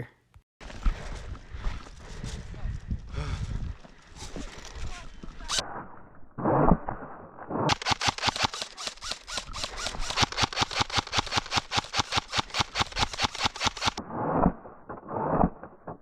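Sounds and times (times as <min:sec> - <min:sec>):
airsoft rifle rapid shots: 0:07.7 - 0:14.0.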